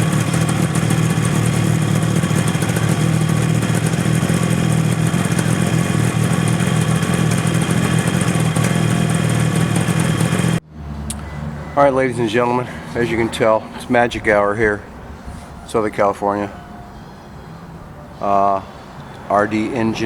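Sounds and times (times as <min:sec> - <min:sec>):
two-stroke engine idling: 0:00.0 - 0:16.8.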